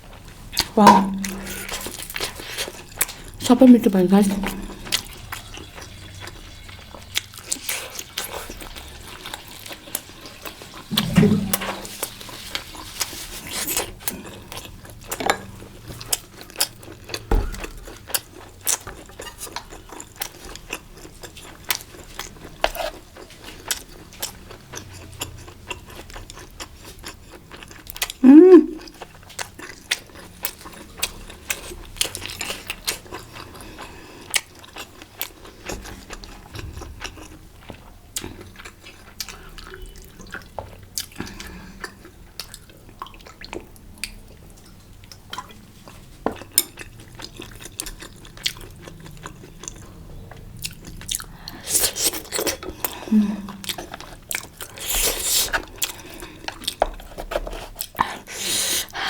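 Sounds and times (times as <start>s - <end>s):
chewing and biting: 13.0s - 28.2s, 28.8s - 59.0s.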